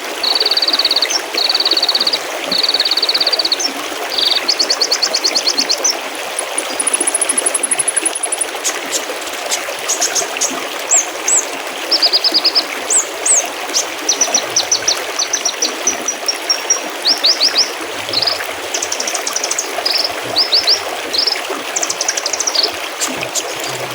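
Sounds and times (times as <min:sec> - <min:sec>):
songbirds trilling and chirping: 0:00.0 - 0:23.9
stream babbling: 0:00.0 - 0:23.9.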